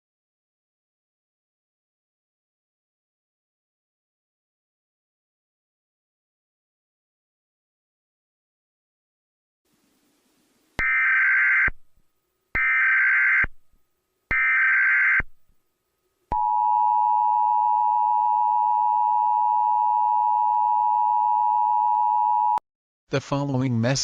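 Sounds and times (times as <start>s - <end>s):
steady attention tone: 10.8s - 22.6s.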